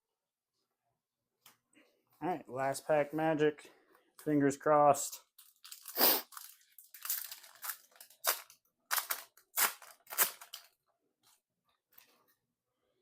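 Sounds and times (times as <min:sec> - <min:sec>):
foil wrapper crinkling: 0:05.3 - 0:10.8.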